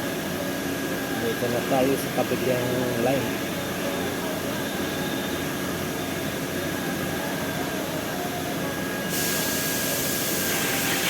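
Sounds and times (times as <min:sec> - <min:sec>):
bright hiss: 0:09.1 - 0:11.0.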